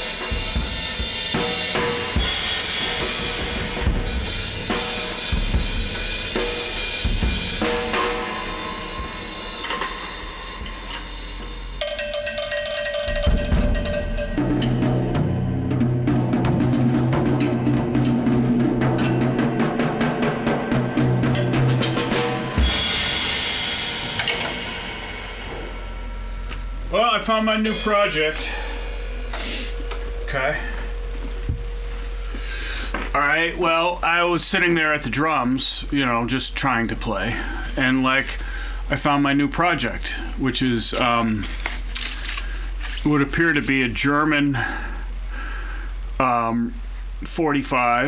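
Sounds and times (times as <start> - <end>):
rapid snare and tom hits: 0.0 - 31.6, 37.0 - 41.6
cymbals ringing: 0.0 - 33.7, 34.4 - 42.7
bass drum hit: 13.1 - 32.3
kick drum: 29.2 - 31.7.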